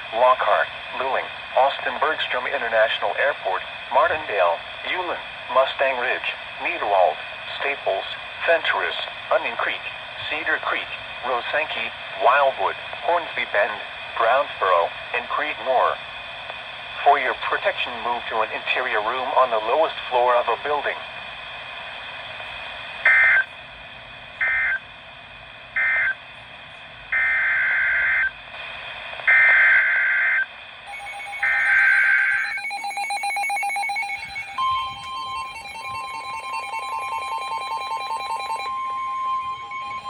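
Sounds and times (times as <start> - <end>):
buzzing digital data bursts: 30.9 - 38.6
pulsing beep: 30.9 - 40.0
steady alert tone: 30.9 - 40.0.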